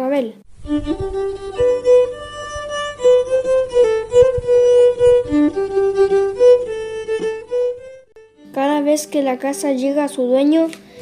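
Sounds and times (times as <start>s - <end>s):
bowed fiddle melody: 0.5s - 9.1s.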